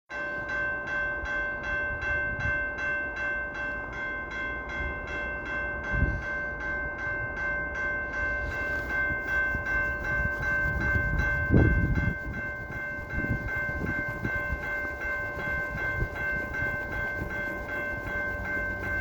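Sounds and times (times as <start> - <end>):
railway crossing bell ringing: 0.1 - 19.0
train rumbling on tracks: 0.2 - 19.0.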